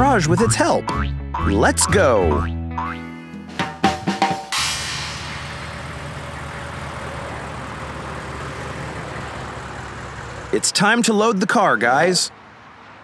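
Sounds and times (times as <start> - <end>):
cartoon truck engine drone: 4.6 - 10.7.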